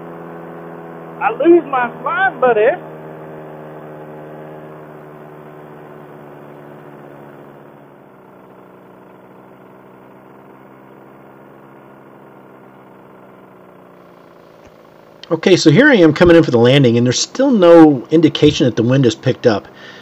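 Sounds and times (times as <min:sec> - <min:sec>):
paramotor engine droning: 0:00.0 - 0:20.0.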